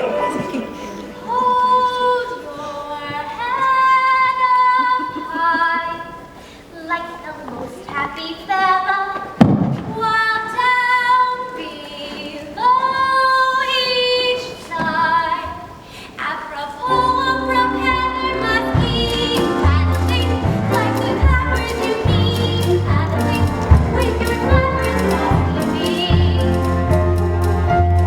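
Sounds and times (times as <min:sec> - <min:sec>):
musical accompaniment: 0:00.0 - 0:02.6, 0:16.9 - 0:28.0
woman singing: 0:00.0 - 0:27.2.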